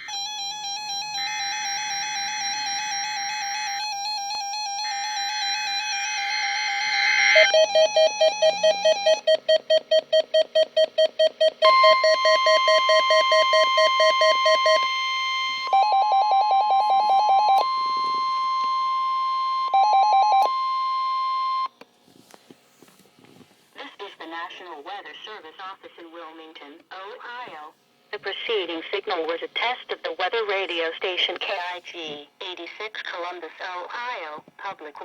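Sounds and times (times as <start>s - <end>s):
electronic beeping: 0.0s - 21.7s
steady warning alarm tone: 0.0s - 21.8s.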